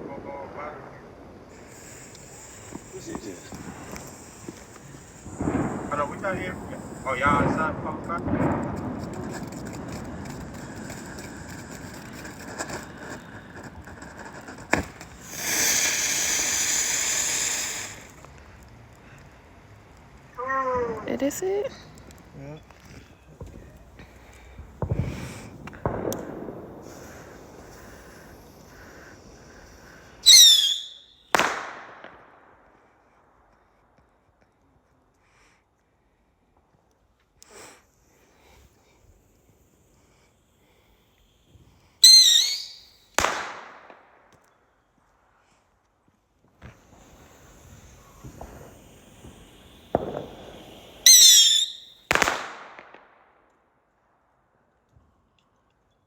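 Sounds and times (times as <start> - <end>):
firework bang: 0.0 - 18.4, 23.3 - 32.6, 41.5 - 44.2, 46.6 - 53.3
whistling firework: 0.0 - 34.5, 36.7 - 56.0.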